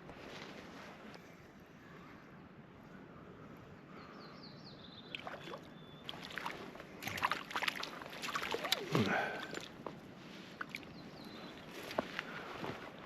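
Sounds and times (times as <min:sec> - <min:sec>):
water splashing and sloshing: 0:05.1 - 0:13.0.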